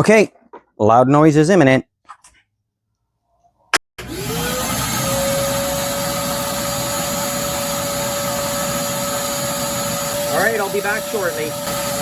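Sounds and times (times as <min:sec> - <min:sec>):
electric pump whining: 0:04.0 - 0:12.0.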